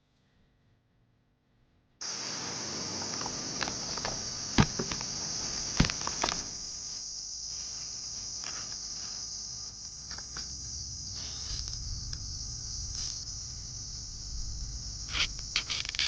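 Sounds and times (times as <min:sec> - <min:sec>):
insect chirring: 0:02.0 - 0:16.0
sharp knocks: 0:03.7 - 0:06.7.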